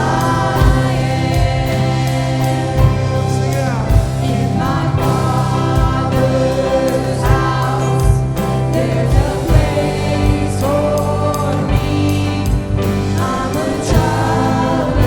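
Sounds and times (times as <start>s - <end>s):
drum hits: 0.0s - 15.0s
worship band and singers: 0.0s - 15.0s.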